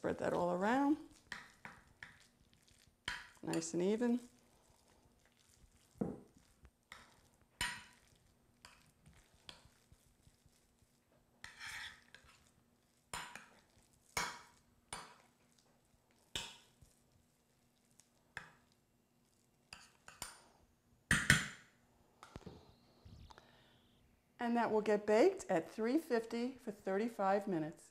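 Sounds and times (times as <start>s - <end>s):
utensil scraping baking dish: 11.4s - 12.5s.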